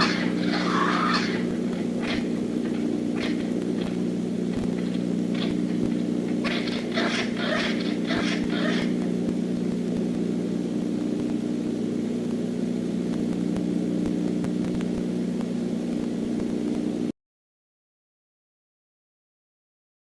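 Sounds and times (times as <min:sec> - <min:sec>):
steady electrical hum: 0:00.0 - 0:17.1
faint clicks: 0:13.1 - 0:15.5.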